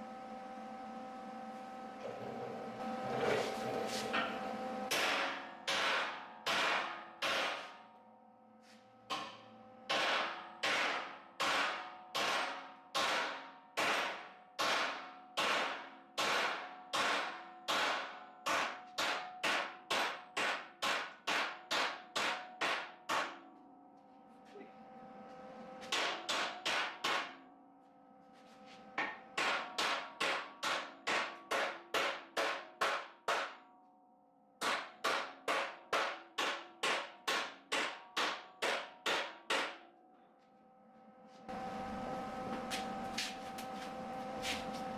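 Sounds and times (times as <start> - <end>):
hammer striking steel: 3.4 - 7.9, 9.1 - 23.4, 25.8 - 27.4, 29.0 - 33.6, 34.6 - 40.0.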